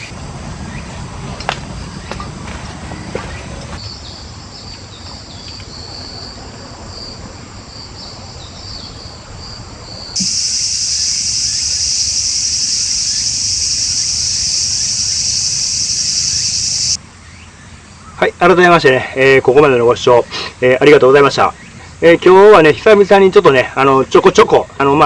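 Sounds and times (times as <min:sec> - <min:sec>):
high-pitched insect chorus: 0:10.2 - 0:17.0
insects trilling: 0:10.2 - 0:18.0.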